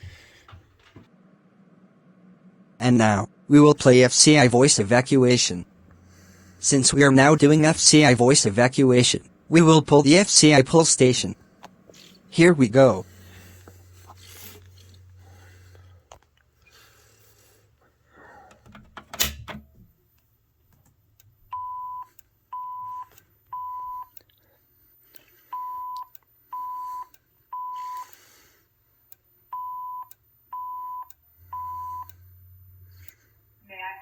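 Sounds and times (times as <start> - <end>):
fire alarm pull station snapping: 18.6 - 19.7
alarm beeps: 21.5 - 24.2, 25.5 - 28.2, 29.2 - 34.0.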